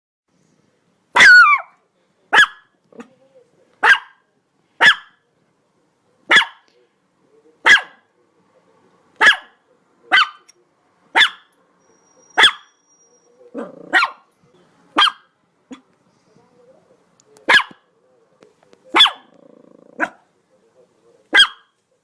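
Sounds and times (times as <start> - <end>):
dog barking: 1.1 - 3.1, 3.8 - 5.2, 6.3 - 6.7, 7.6 - 8.1, 9.2 - 10.5, 11.1 - 11.6, 12.4 - 12.8, 13.5 - 14.3, 15.0 - 15.9, 17.4 - 17.9, 18.9 - 19.4, 20.0 - 20.3, 21.3 - 21.8.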